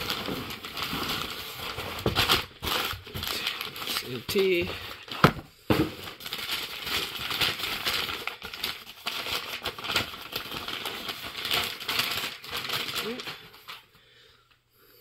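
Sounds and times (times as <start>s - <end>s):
packaging rustling and crinkling: 0.0s - 13.9s.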